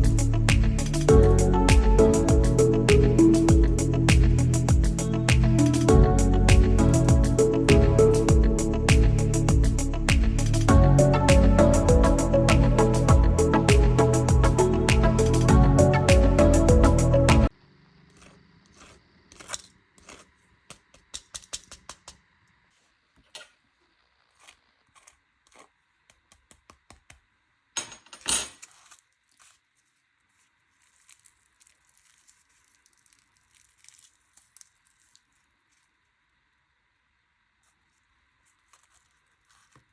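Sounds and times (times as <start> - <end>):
puff pastry crackling and crunching: 18.1 - 22.2, 24.2 - 26.6, 28.6 - 36.3, 37.6 - 39.9.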